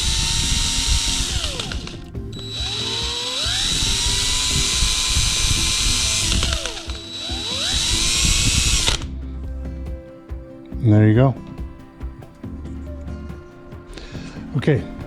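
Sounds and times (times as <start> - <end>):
power drill motor whine: 0.0 - 9.2.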